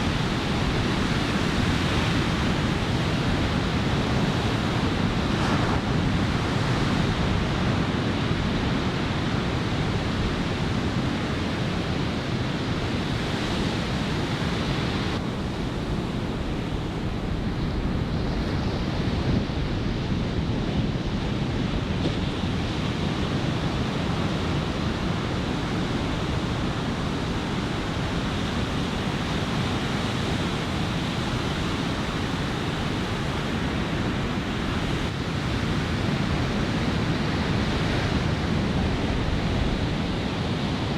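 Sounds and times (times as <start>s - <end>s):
surf washing on a beach: 0.0s - 40.9s
wind buffeting the microphone: 0.0s - 40.9s.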